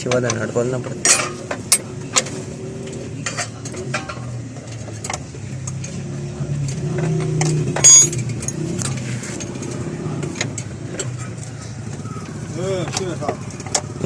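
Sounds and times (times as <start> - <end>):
metal hand tools clinking: 1.0 - 1.9, 7.1 - 8.7
loud ringing metal clang: 7.8 - 8.2.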